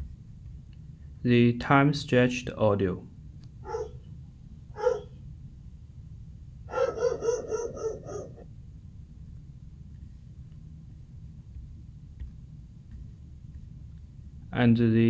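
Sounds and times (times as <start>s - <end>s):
pitched yelps: 3.6s - 4.1s, 4.8s - 5.2s, 6.7s - 8.4s.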